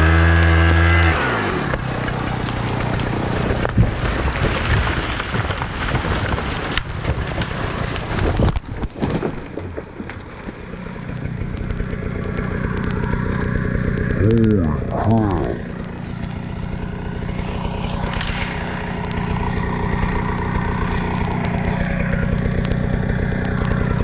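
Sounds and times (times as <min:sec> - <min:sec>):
chainsaw idling: 0:00.0 - 0:03.7, 0:10.6 - 0:24.0
tree crashing through branches: 0:00.0 - 0:14.2, 0:15.6 - 0:24.0.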